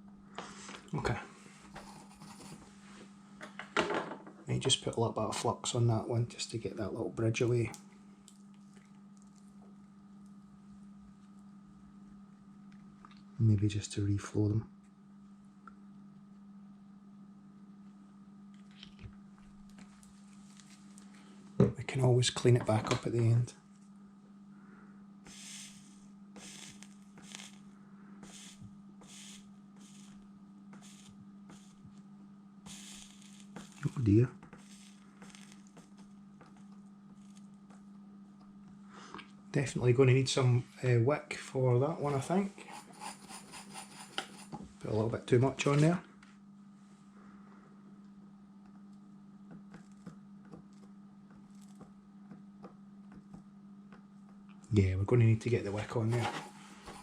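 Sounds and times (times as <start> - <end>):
steady low hum: 0.0 - 57.0
soldering iron sizzles: 25.2 - 37.9, 42.0 - 44.6, 55.8 - 57.0.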